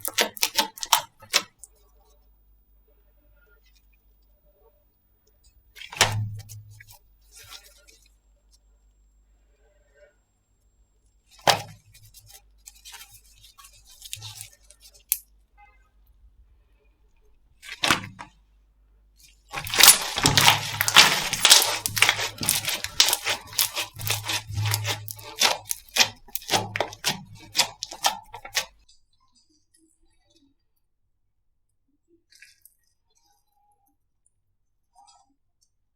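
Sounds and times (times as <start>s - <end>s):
slime popping and crackling: 0.0s - 1.6s, 14.0s - 14.5s, 17.7s - 18.3s, 19.5s - 28.7s.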